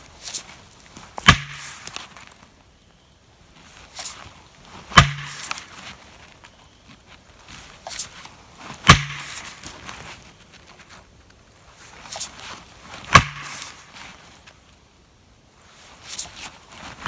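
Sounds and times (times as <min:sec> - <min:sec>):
hammer pounding felling wedge: 0:01.2 - 0:02.0, 0:04.9 - 0:06.0, 0:08.8 - 0:10.0, 0:13.0 - 0:14.0.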